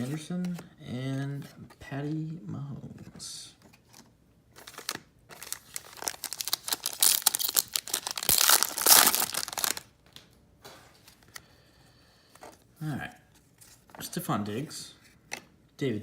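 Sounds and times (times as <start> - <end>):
foil wrapper tearing and crinkling: 4.7 - 9.9.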